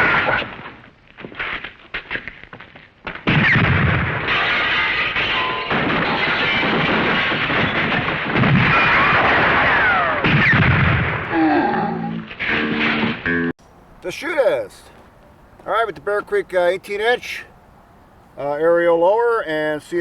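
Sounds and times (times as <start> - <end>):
blast-like effects: 8.6 - 13.5.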